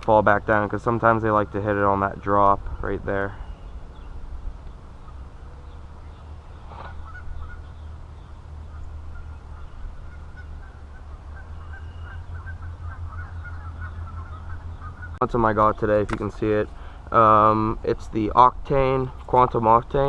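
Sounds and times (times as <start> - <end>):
steady low rumble: 0.0 - 20.0
faint honking bird calls: 3.1 - 15.8.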